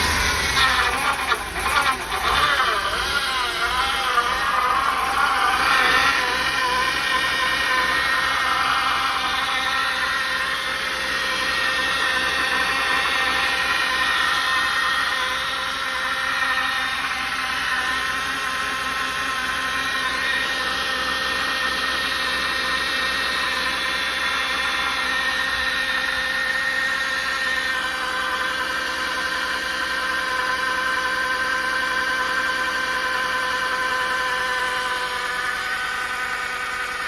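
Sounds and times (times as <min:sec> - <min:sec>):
high whine: 0:00.0 - 0:21.3
engine idling roughly: 0:00.0 - 0:37.0.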